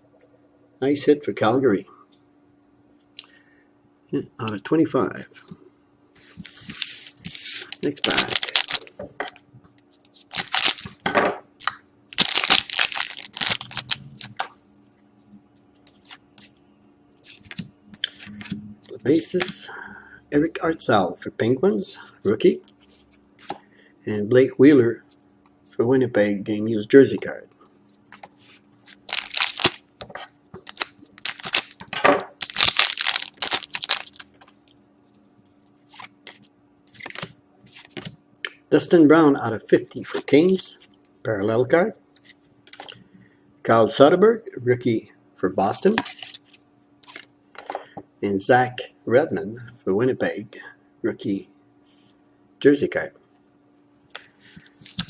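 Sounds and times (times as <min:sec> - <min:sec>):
wrapper tearing and crinkling: 0:06.7 - 0:08.9, 0:10.3 - 0:11.0, 0:12.2 - 0:14.4, 0:28.9 - 0:29.8, 0:30.6 - 0:31.8, 0:32.4 - 0:34.4.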